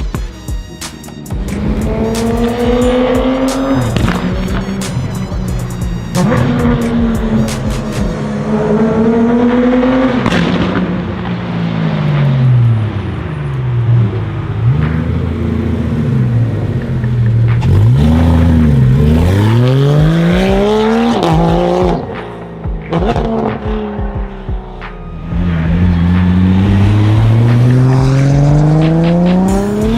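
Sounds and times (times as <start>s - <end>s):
car engine revving: 0.9s - 29.9s.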